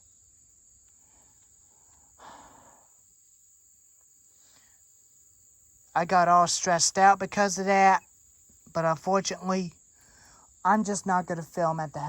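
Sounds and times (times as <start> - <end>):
crickets chirring: 0.0 - 12.0
soft breath: 1.0 - 3.0.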